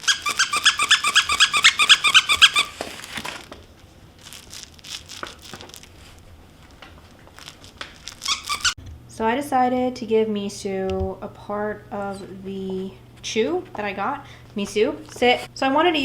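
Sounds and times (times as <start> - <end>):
squeaky dog toy squeaking: 0.0 - 2.8, 8.2 - 8.8
crinkling: 0.0 - 8.8.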